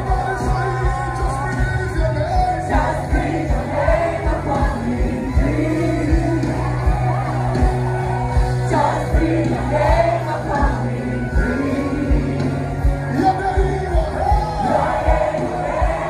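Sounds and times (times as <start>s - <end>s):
person singing pop song: 0.0s - 7.9s, 8.6s - 16.0s.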